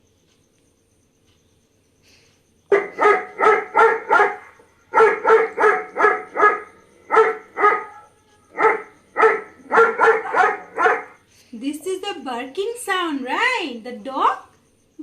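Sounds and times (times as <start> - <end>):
dog barking: 2.7 - 11.2.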